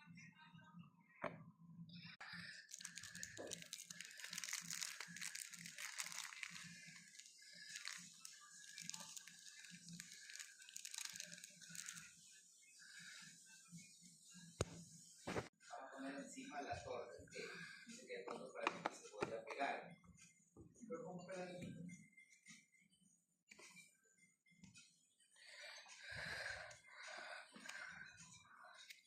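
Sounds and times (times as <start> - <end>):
packaging crackling and rustling: 2.6 - 12.1.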